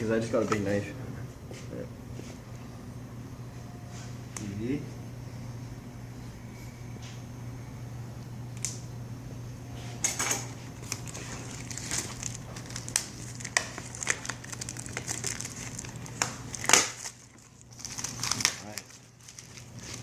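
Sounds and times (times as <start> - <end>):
steady low hum: 0.0 - 20.0
packaging crinkling and scraping: 10.5 - 20.0.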